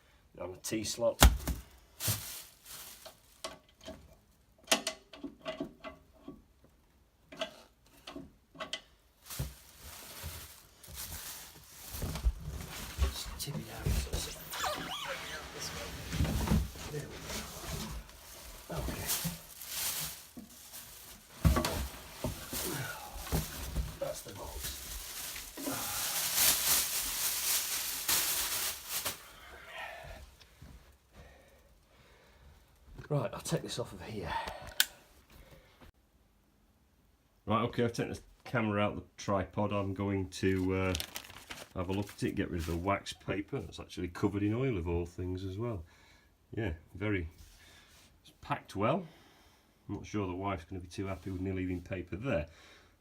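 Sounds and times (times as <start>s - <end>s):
packing scraping rustle: 2.0s - 3.5s, 9.2s - 29.4s, 40.8s - 42.2s.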